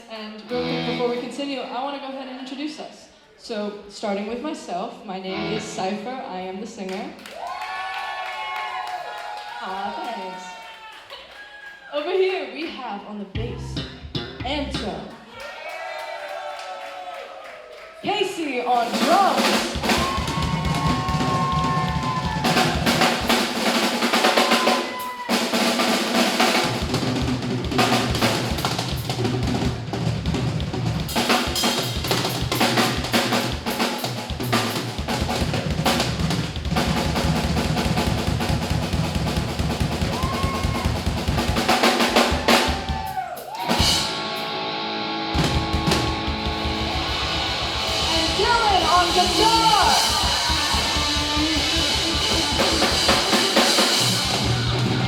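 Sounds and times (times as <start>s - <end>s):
rock drum solo: 13.4s - 15.1s, 18.7s - 55.0s.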